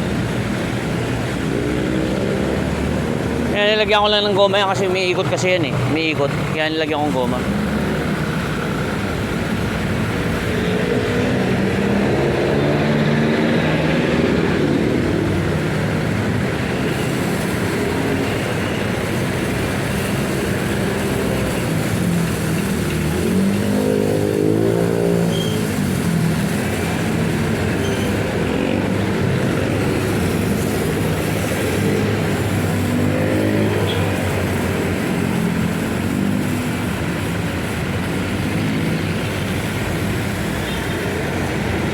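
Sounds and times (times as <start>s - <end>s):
pressure washer running: 0.0s - 41.9s.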